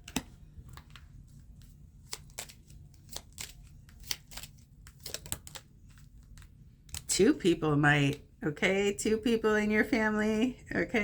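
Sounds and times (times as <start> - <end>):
cards clicking and snapping: 0.0 - 7.1.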